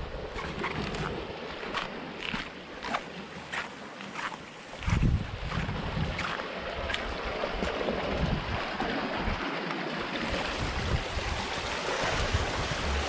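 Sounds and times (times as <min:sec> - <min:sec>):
wind buffeting microphone: 0:04.8 - 0:09.4, 0:10.0 - 0:13.0
surf rushing: 0:10.0 - 0:13.0.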